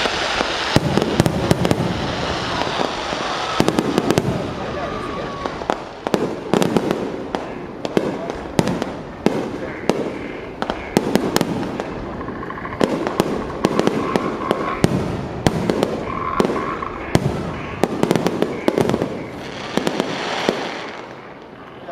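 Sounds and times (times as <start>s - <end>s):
fireworks bangs and crackles: 0.0s - 21.9s.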